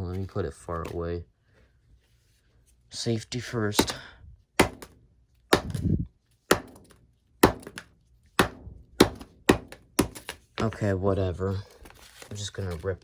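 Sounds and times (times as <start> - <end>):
hammer striking plastic cards: 3.8 - 4.0, 4.6 - 10.8.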